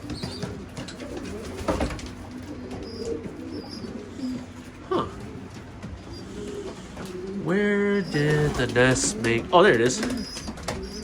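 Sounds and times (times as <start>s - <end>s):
pigeons cooing: 0.0s - 11.0s.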